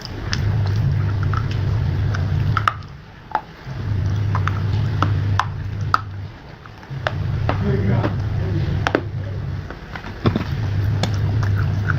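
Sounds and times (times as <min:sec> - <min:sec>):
low rumble: 0:00.0 - 0:11.9.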